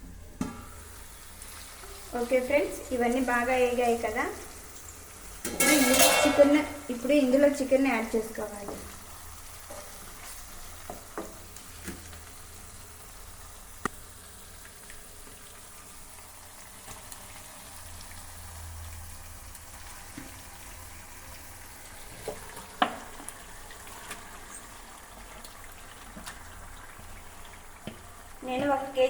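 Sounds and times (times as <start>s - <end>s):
masala sizzling in oil: 0.0s - 29.0s
utensil clinking against pan: 5.5s - 6.8s.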